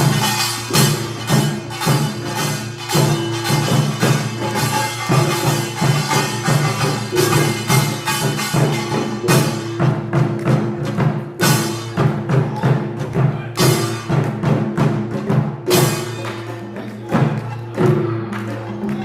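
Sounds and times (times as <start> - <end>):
small gongs clanging: 0.0 - 10.1
drums: 0.0 - 19.0.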